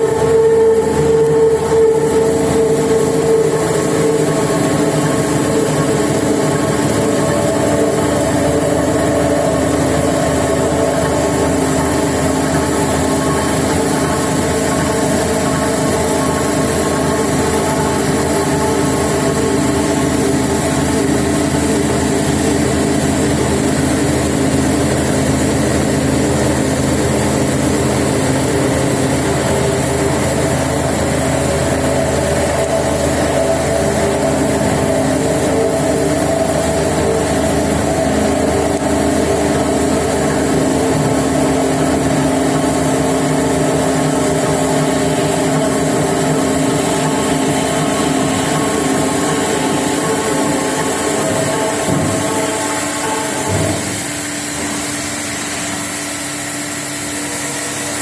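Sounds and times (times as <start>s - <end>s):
milling machine humming: 0.0s - 58.0s.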